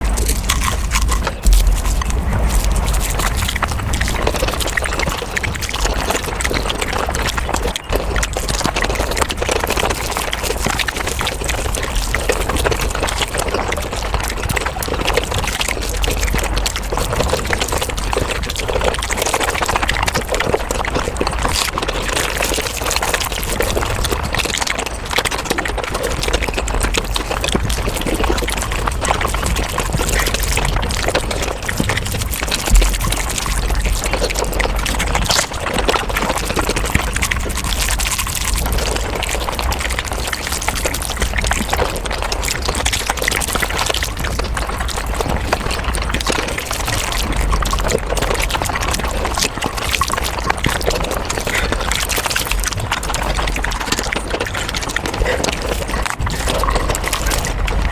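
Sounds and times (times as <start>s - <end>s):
rapid wet chewing and slurping: 0.0s - 57.9s.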